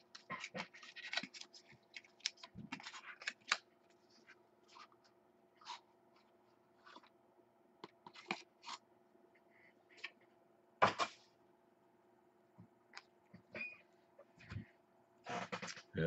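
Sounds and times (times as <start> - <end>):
card packaging rustling: 0.0 - 5.0.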